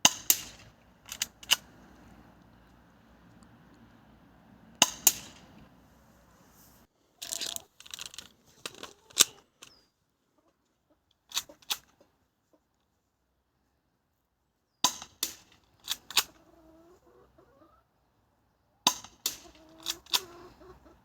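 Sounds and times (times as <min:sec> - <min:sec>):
pistol slide clicking and rattling: 0:00.1 - 0:01.7, 0:07.2 - 0:09.8, 0:11.3 - 0:11.9.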